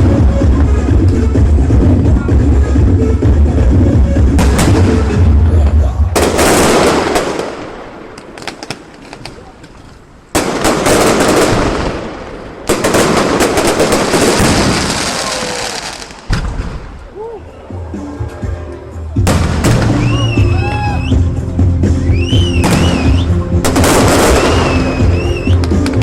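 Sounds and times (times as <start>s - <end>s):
loud music with heavy bass beat: 0.0s - 6.7s, 17.8s - 26.0s
fireworks banging and crackling: 4.2s - 17.1s, 19.2s - 20.5s, 22.4s - 26.0s.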